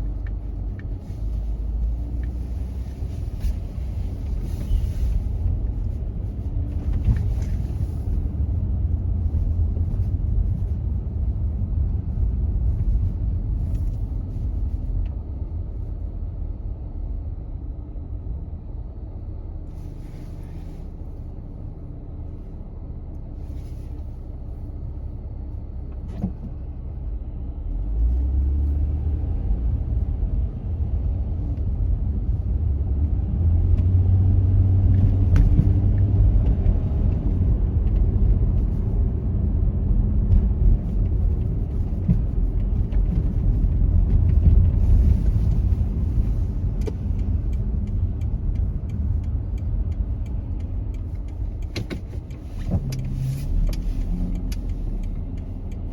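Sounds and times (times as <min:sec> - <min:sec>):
car road and engine rumble: 0:00.0 - 0:55.9.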